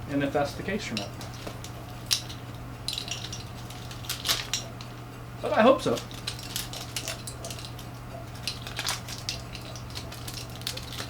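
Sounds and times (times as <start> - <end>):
low electrical hum: 0.0 - 11.0
parts clicking: 0.8 - 4.9, 5.5 - 11.0
packaging rustling: 1.2 - 4.8, 5.8 - 11.0.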